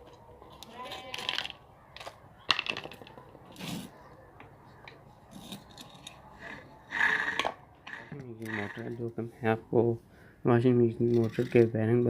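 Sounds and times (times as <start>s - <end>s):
metal scraping and rubbing: 5.3s - 9.1s.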